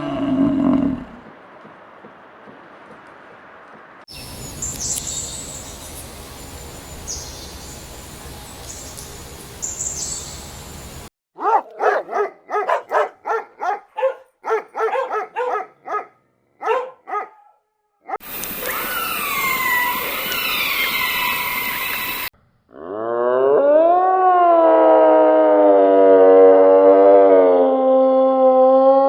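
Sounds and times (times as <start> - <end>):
steady outdoor noise: 0.0 - 17.4, 18.1 - 22.7
birds chirping: 4.1 - 17.6, 18.2 - 22.3
dog barking: 11.4 - 18.2
overlapping calls sliding downward: 18.5 - 22.3.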